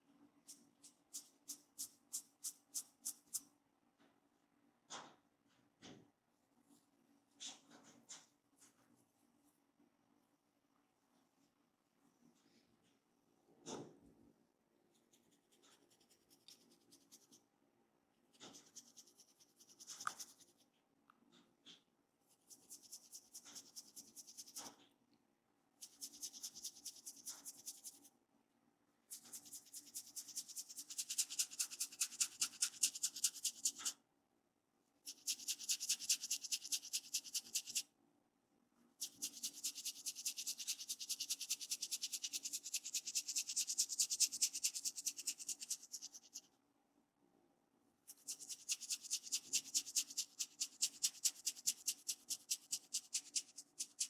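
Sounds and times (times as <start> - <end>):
fingertips scratching through hair: 22.4 - 24.8, 25.8 - 28.0, 29.1 - 33.9, 35.1 - 37.8, 39.0 - 46.5, 48.1 - 54.0.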